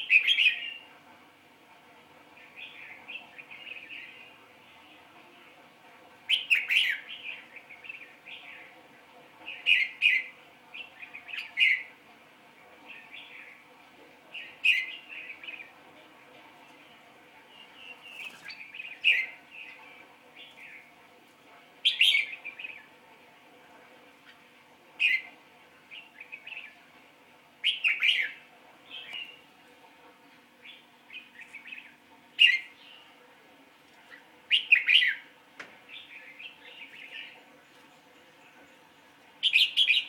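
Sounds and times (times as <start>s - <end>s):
bird chirping: 17.5s - 20.8s, 27.6s - 29.4s, 35.9s - 40.0s.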